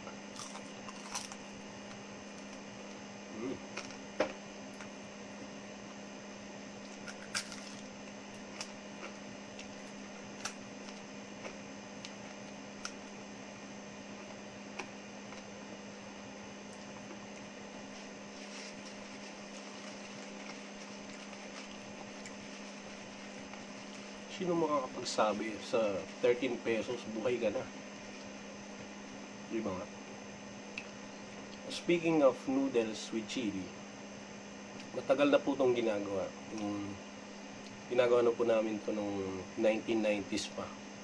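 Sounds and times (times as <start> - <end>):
air conditioner humming: 0.0 - 41.0.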